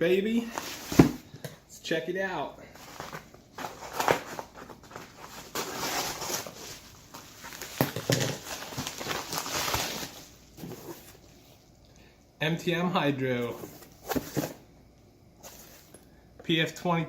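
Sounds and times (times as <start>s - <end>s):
packaging rustling and crinkling: 2.7s - 11.6s.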